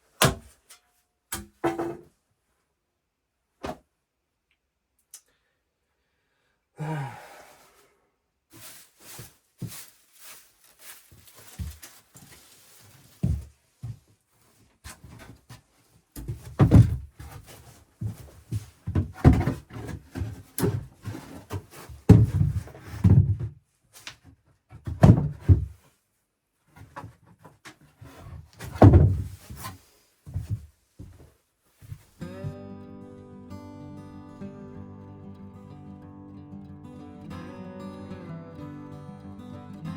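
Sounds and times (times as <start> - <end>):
knocks and heavy thuds: 16.2 - 21.3, 22.1 - 23.5, 28.6 - 32.1.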